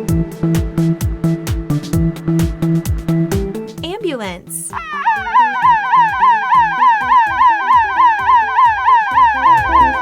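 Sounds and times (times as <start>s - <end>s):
upbeat electronic music: 3.4s - 10.0s.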